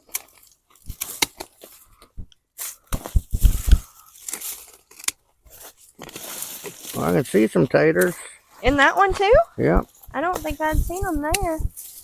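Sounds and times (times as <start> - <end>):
garden snips crunching through stalks: 0.0 - 1.9, 8.8 - 12.0
leaves rustling: 2.6 - 12.0.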